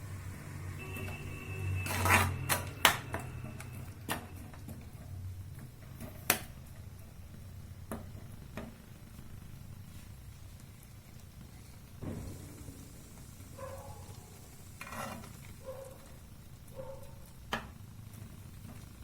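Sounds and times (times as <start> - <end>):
spoon knocking and scraping a pan: 14.8 - 15.5.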